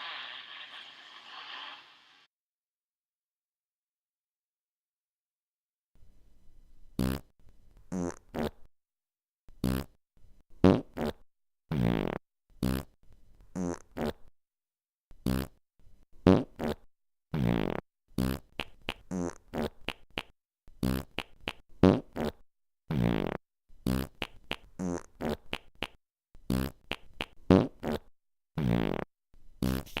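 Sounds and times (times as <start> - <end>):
short pitched farts: 7.0 - 7.3, 7.9 - 8.6, 9.6 - 10.0, 10.6 - 13.0, 13.6 - 14.3, 15.2 - 15.6, 16.2 - 30.0.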